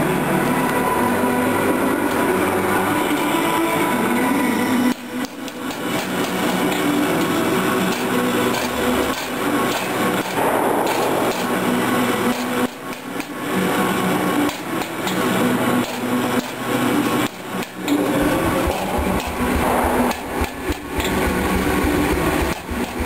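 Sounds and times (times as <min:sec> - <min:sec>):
hammer strikes on metal: 0:07.8 - 0:13.4, 0:17.2 - 0:23.0.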